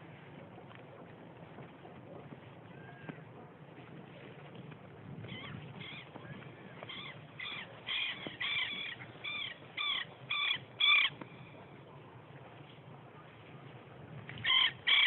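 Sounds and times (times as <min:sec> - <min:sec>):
bird giving harsh calls: 0:06.9 - 0:11.2, 0:14.4 - 0:15.0.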